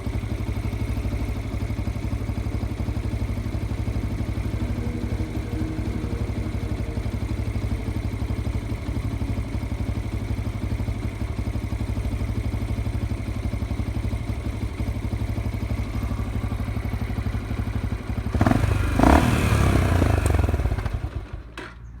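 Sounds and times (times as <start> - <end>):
motorcycle engine idling and revving: 0.0 - 22.0.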